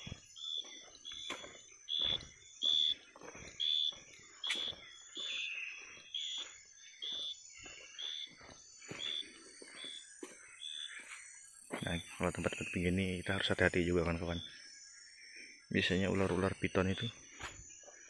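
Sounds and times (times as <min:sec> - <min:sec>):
footsteps on forest floor: 0:00.0 - 0:12.8, 0:17.2 - 0:18.0
insect chirp: 0:00.0 - 0:18.0
insect drone: 0:00.0 - 0:18.0.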